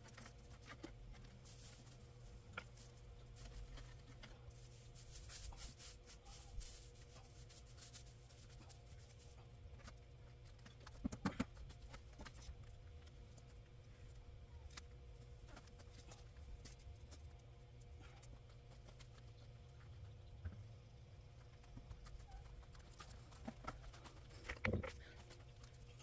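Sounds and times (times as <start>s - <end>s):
dry plants rustling and crackling: 0.0s - 11.0s.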